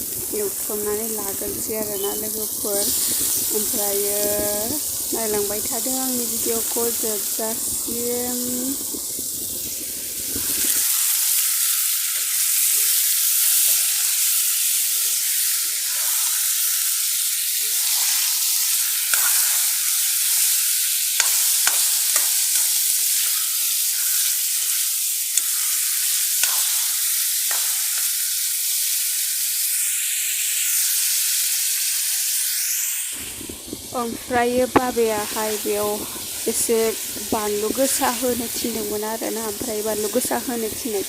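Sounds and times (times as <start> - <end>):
food sizzling in hot oil: 0.0 - 41.0
utensil knocking against pan: 21.2 - 23.4, 27.5 - 28.0.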